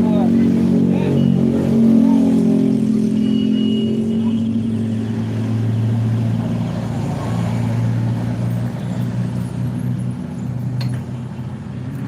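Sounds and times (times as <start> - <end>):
bus engine humming: 0.0 - 12.0.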